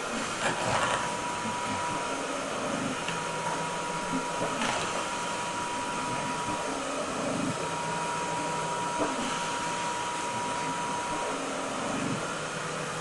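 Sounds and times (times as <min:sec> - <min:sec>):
cough assist machine blower: 0:00.0 - 0:12.9.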